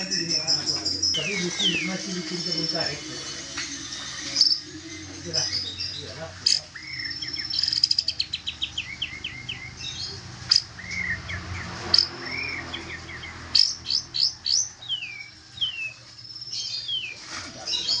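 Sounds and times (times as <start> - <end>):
songbird whistling: 0.0 - 11.4
sharp bird chirps: 0.0 - 18.0.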